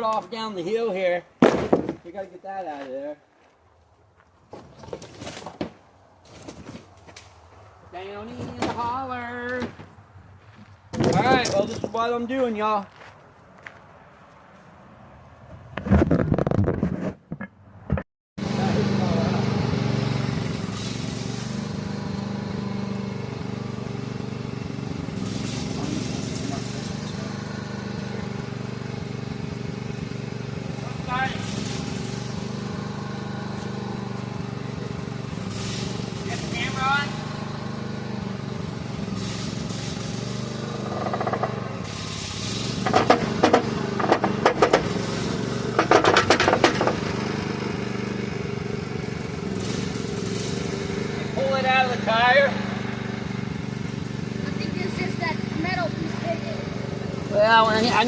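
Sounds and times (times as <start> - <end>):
metallic creaking and clanking: 10.9 - 12.1
small engine running: 18.4 - 58.0.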